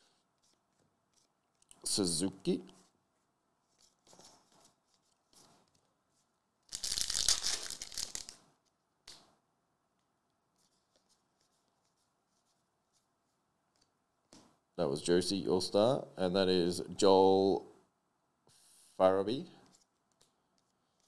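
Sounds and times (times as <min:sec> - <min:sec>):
wrapper and cards rustling: 0:03.8 - 0:08.8
wrapper tearing: 0:06.7 - 0:08.4.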